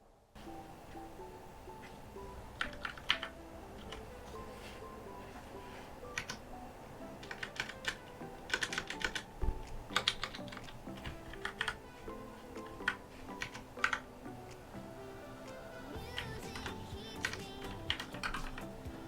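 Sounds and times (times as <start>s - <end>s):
background music: 0.0s - 19.0s.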